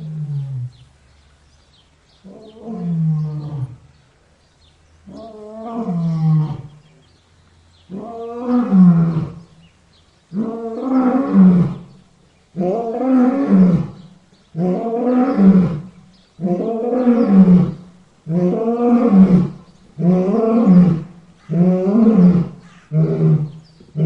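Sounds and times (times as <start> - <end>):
lion roaring: 2.3 - 3.8, 14.6 - 24.0.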